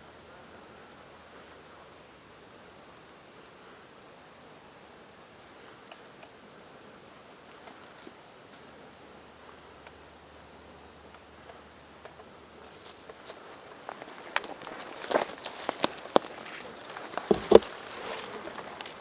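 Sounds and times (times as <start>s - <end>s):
crickets and insects chirring: 0.0s - 19.0s
footsteps: 12.7s - 19.0s.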